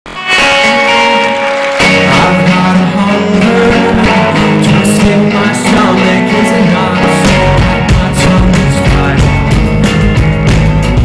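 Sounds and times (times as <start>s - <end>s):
rock band playing live: 0.1s - 11.0s
guitar chord ringing: 0.4s - 8.0s.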